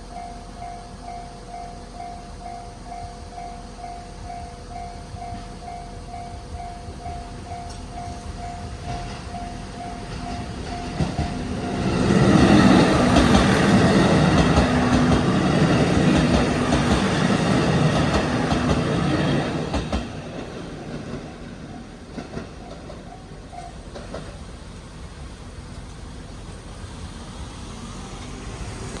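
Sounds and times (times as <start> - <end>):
diesel railcar engines droning: 0.0 - 29.0
train wheels clacking over rail joints: 6.4 - 24.5.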